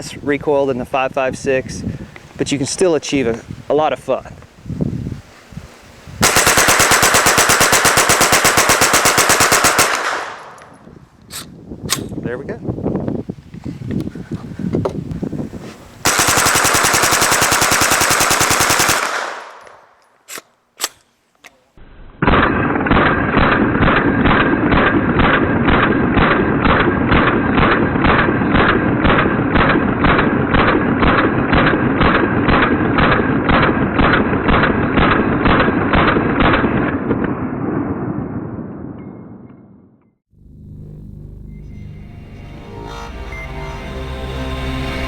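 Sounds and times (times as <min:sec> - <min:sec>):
rapid gunfire burst: 0:06.2 - 0:10.6, 0:16.0 - 0:19.6
single gunshots: 0:06.2 - 0:10.8, 0:16.1 - 0:19.8.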